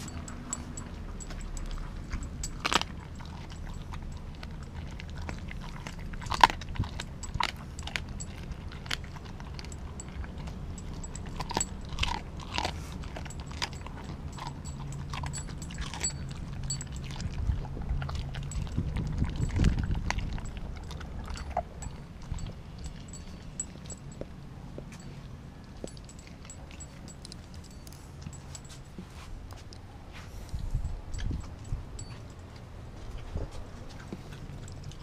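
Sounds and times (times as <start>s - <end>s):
teeth clicking: 0.0s - 24.3s, 25.6s - 28.8s
dog chewing raw meat: 0.0s - 35.0s.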